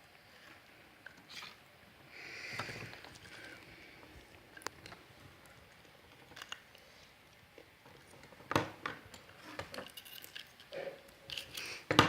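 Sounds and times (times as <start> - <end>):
small parts clicking and knocking: 5.8 - 6.8, 7.6 - 12.0.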